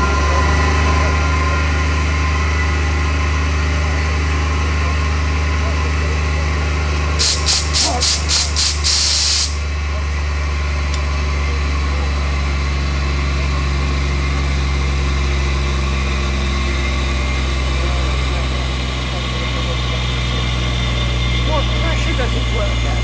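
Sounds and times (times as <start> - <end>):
low engine drone: 0.0 - 23.0
locomotive hissing air puffs: 7.2 - 9.7.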